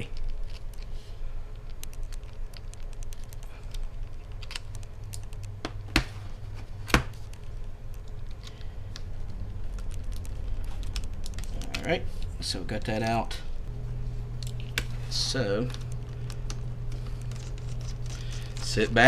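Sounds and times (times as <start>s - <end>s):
low steady hum: 0.0s - 19.0s
fingers and tools clicking: 1.6s - 6.0s.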